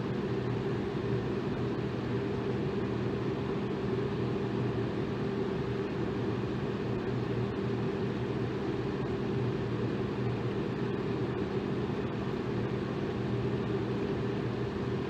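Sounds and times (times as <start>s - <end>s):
electric fan whooshing air: 0.0s - 15.0s
fan motor hum: 0.0s - 15.0s.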